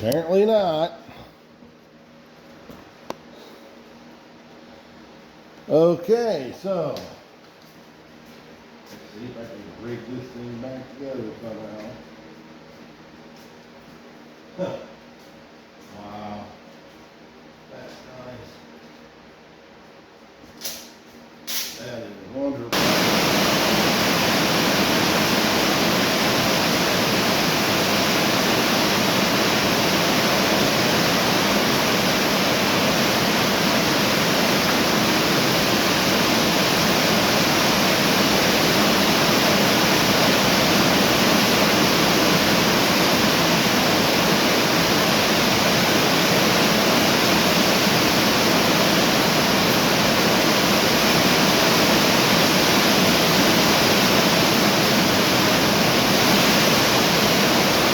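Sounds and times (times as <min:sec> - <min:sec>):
heavy rain pouring: 0:22.8 - 0:57.9.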